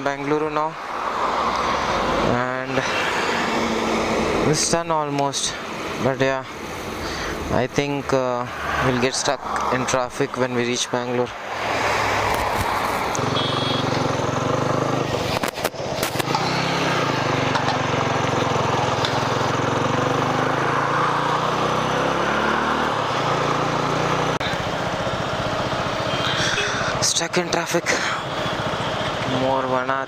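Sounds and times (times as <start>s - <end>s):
wind and road noise: 0.0s - 30.0s
motorcycle engine running: 12.4s - 29.9s.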